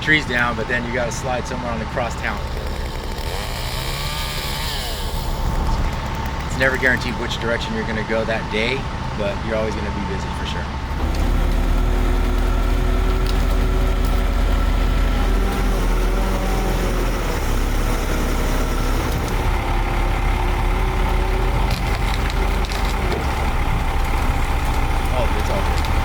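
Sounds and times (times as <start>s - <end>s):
heavy engine rumbling: 0.0s - 26.0s.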